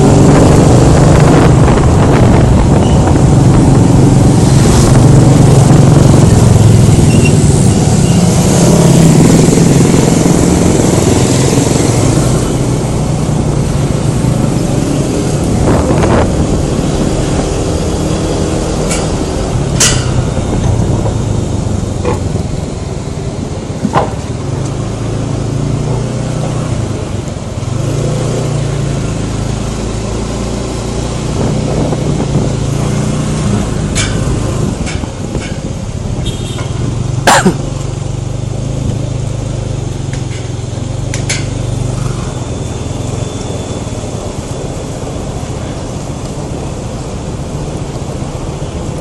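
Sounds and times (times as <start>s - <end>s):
wind rushing over microphone: 0.0s - 27.2s, 28.7s - 37.1s
scooter engine hum: 0.0s - 49.0s.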